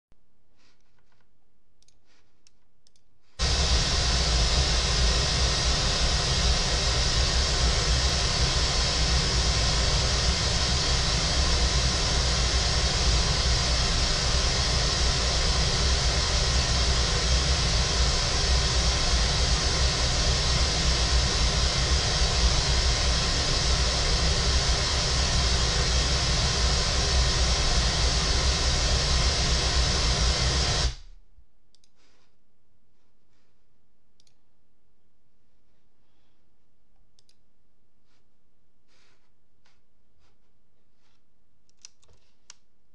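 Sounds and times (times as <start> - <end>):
pink noise hiss: 3.4 - 31.0.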